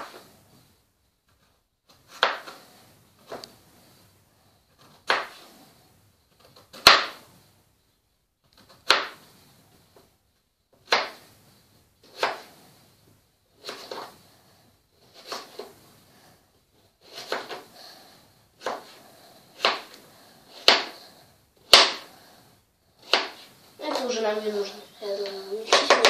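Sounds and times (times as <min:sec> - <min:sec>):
knife slicing potato: 0:01.9 - 0:03.5, 0:04.8 - 0:05.6, 0:08.6 - 0:09.3, 0:10.8 - 0:11.3, 0:12.0 - 0:12.6, 0:13.5 - 0:14.2, 0:15.0 - 0:15.8, 0:17.0 - 0:17.7, 0:18.6 - 0:21.0, 0:21.6 - 0:22.2, 0:23.0 - 0:24.0.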